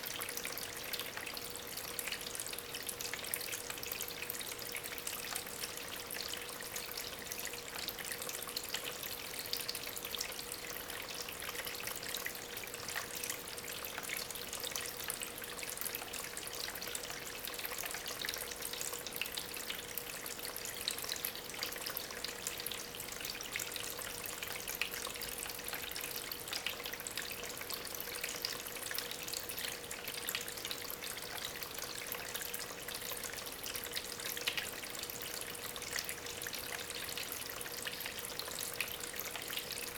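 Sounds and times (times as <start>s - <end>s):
faint steady hum: 0.0s - 39.9s
water trickling over stones: 0.0s - 39.9s.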